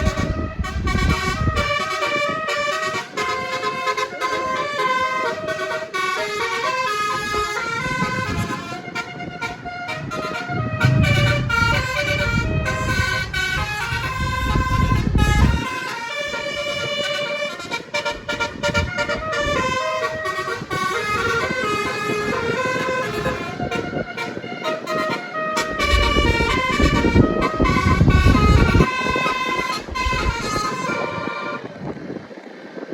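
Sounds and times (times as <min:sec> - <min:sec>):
bus horn tooting melody: 0:00.0 - 0:31.8
low rumble: 0:10.5 - 0:15.6.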